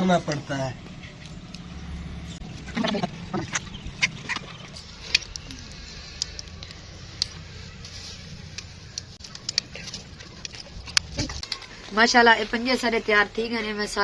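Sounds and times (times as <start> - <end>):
steady low buzz: 0.7 - 11.4
skin peeling clicks and snaps: 3.4 - 7.5.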